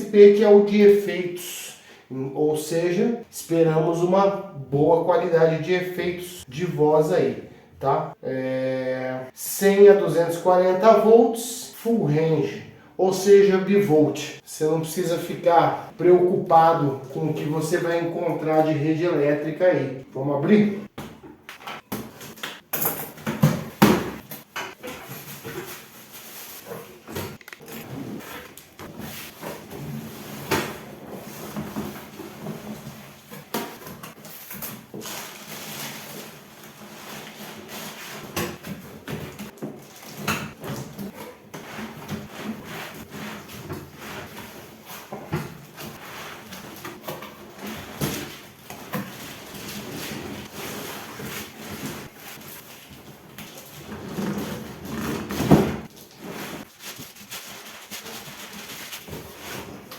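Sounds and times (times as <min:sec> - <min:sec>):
packaging rustling and scraping: 0:24.2 - 0:59.9.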